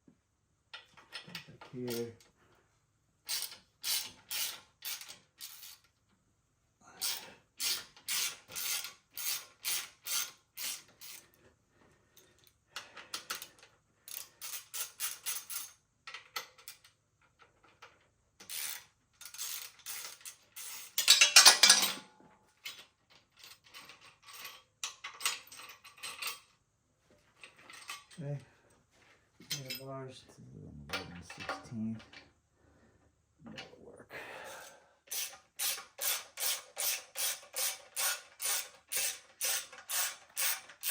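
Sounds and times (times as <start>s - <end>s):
ratchet wrench clicking: 3.3s - 5.8s, 7.0s - 11.2s, 18.4s - 21.2s, 35.1s - 40.9s.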